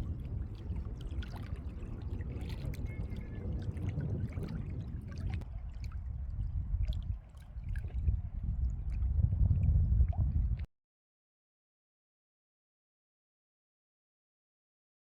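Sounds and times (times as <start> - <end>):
wind buffeting microphone: 0.0 - 10.7.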